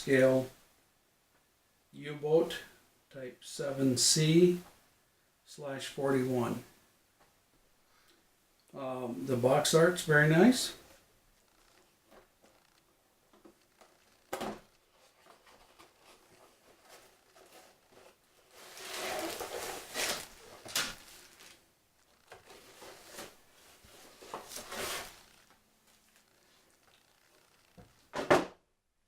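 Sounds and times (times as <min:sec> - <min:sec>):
cardboard and paper rustling: 0:11.6 - 0:28.2.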